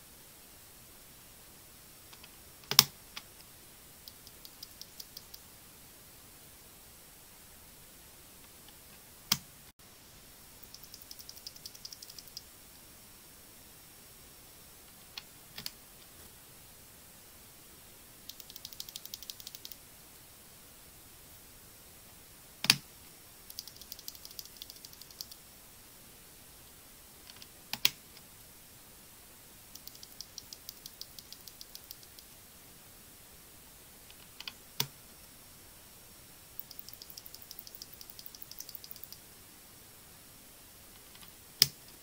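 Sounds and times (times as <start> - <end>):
keyboard keys clicking: 4.0 - 5.4, 10.6 - 12.5, 18.3 - 19.8, 23.5 - 25.4, 29.8 - 32.3, 36.6 - 39.2.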